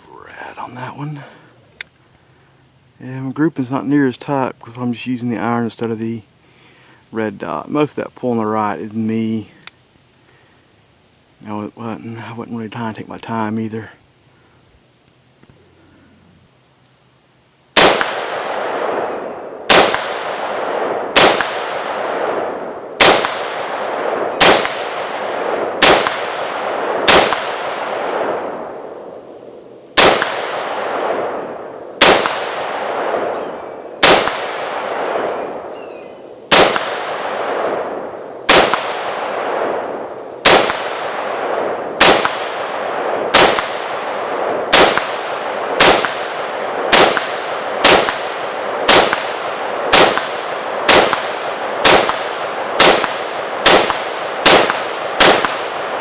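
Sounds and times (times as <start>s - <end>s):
ringing gunshot echo: 17.8s - 29.2s, 30.0s - 56.0s
rifle gunshots: 17.8s - 56.0s.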